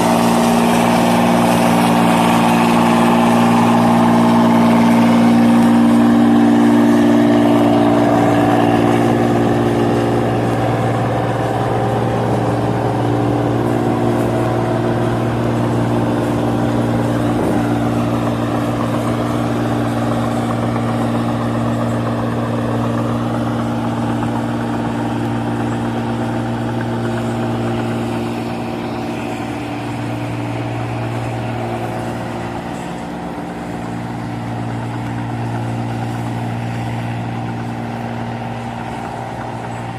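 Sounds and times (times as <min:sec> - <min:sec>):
combine harvester running: 0:00.0 - 0:39.9.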